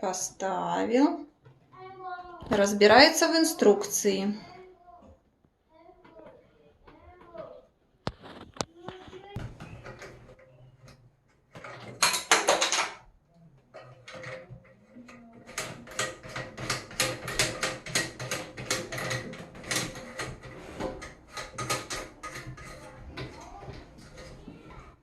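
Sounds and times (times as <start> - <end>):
plastic parts clicking and rattling: 8.1 - 25.0.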